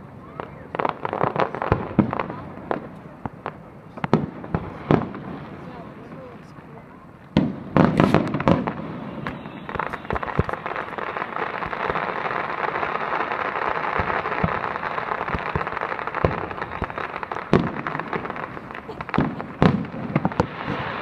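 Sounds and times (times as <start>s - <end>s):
fireworks booming: 0.0s - 21.0s
fireworks crackling: 0.0s - 21.0s
sharp pops: 7.4s - 10.9s.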